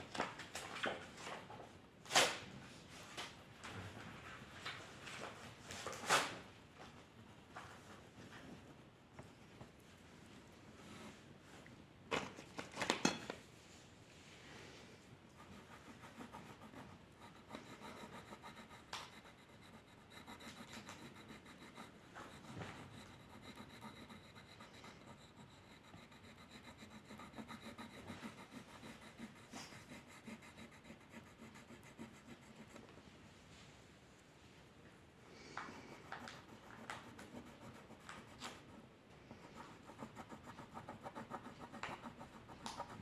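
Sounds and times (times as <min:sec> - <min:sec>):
pencil scratching on paper: 0:15.4 - 0:32.9, 0:35.8 - 0:43.0.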